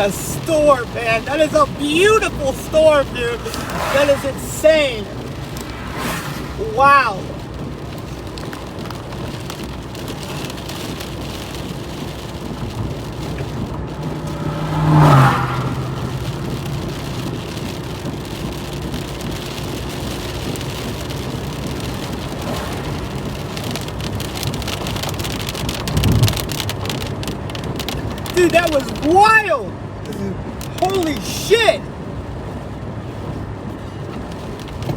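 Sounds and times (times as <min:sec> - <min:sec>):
steady rain falling: 0:00.0 - 0:34.9
thunderstorm: 0:21.8 - 0:25.0.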